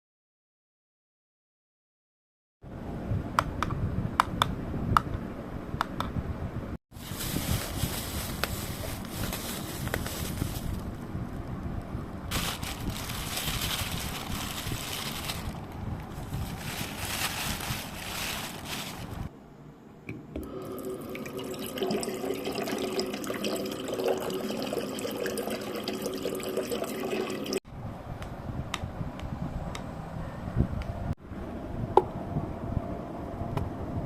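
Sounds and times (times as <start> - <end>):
running water: 20.5 - 27.6.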